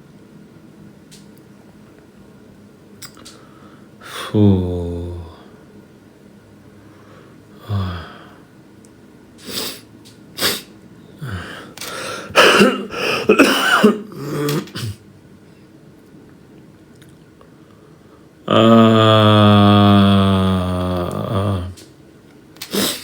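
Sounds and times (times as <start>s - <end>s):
man coughing: 11.2s - 15.0s
throat clearing: 12.3s - 15.0s.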